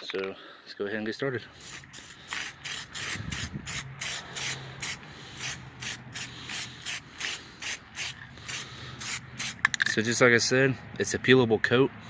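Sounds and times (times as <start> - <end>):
aerosol can hissing strokes: 1.6 - 9.7.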